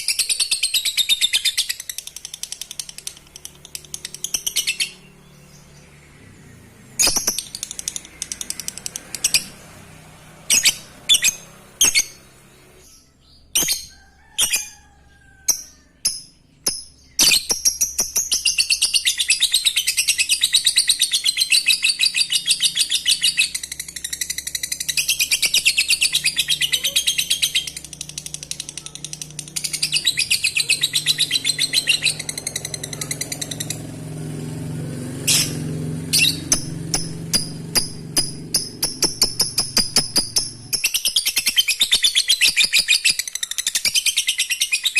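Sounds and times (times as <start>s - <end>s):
bird chattering trill: 15.5s - 34.0s, 35.2s - 44.9s.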